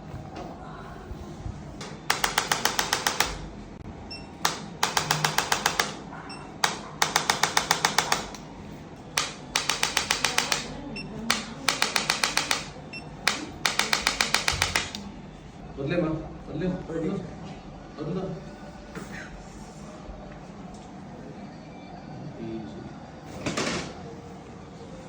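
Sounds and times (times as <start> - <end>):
rapid sharp clicks: 2.1 - 3.4, 4.4 - 6.0, 6.6 - 8.4, 9.2 - 15.0.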